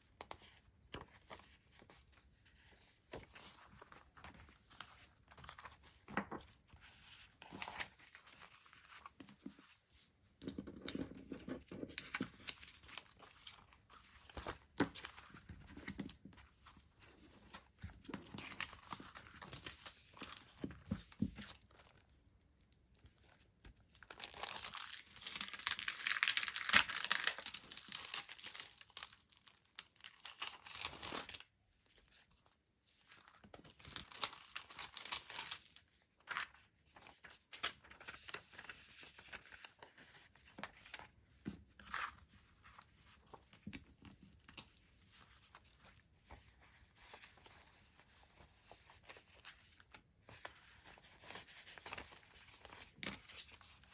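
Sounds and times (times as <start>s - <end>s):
packaging rustling and crinkling: 24.0s - 31.4s, 33.2s - 39.9s
packaging tearing: 24.1s - 31.4s.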